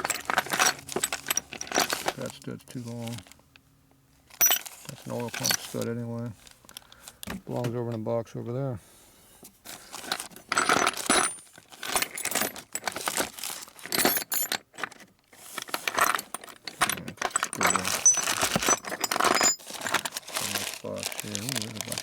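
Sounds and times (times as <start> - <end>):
metal hardware jingling and clattering: 0.0 - 2.2, 4.4 - 5.8, 10.1 - 13.1, 13.8 - 20.1.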